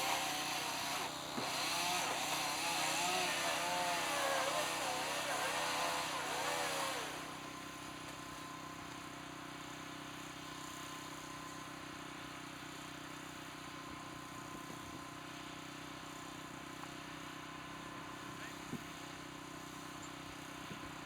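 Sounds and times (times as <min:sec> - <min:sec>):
chainsaw running: 0:00.0 - 0:08.6.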